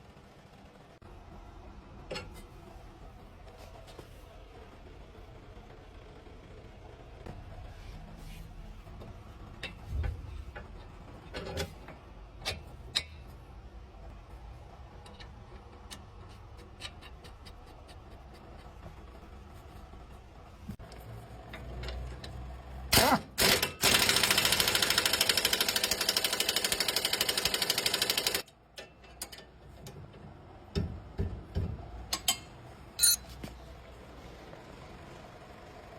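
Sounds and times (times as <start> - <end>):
pneumatic impact wrench hammering: 22.9 - 28.4.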